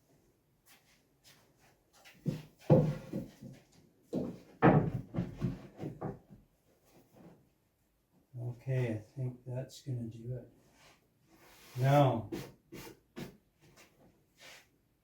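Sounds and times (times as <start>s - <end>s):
wooden boards knocking: 4.2s - 6.2s.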